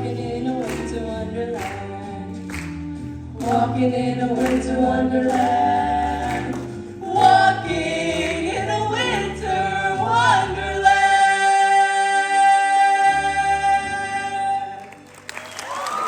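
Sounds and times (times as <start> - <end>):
low bass notes: 0.0 - 14.6
choir singing: 3.4 - 14.5.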